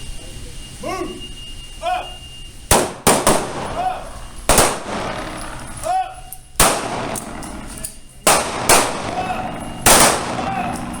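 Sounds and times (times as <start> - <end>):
man shouting: 0.8 - 2.2, 3.6 - 4.2, 5.8 - 6.3, 9.0 - 9.6, 10.4 - 11.0
pistol shots with echo: 2.7 - 5.6, 6.6 - 11.0.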